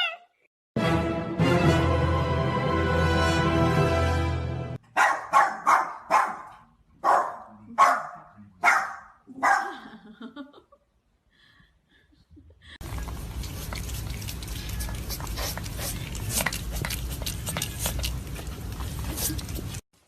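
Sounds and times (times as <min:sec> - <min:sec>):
dog barking: 0:04.9 - 0:09.8.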